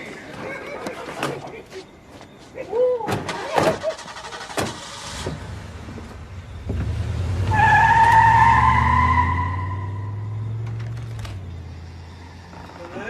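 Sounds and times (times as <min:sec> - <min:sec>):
tire squeal: 0:06.2 - 0:10.8.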